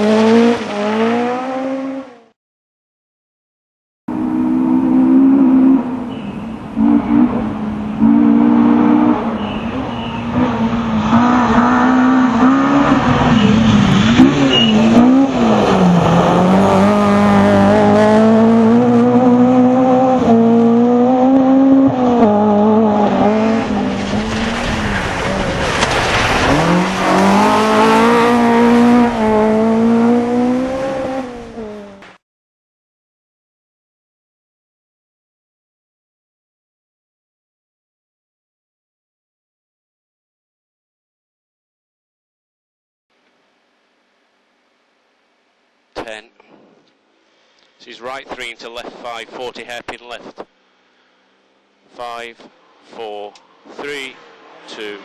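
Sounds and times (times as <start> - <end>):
rally car engine revving: 0.0 - 2.3, 4.1 - 32.2, 51.9 - 55.0.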